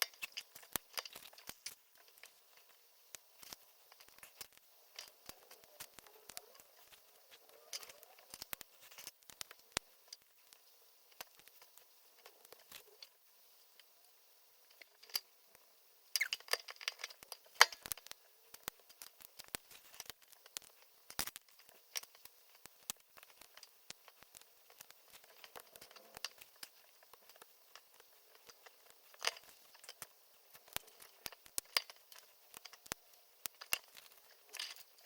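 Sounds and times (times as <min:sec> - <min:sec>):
plastic bricks clicking together: 0:16.2 - 0:35.0.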